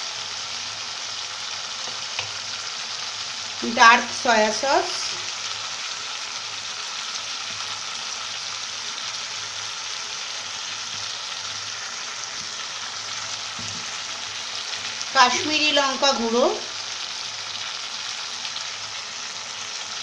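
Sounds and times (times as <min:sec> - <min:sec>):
vegetables sizzling in oil: 0:00.0 - 0:20.0.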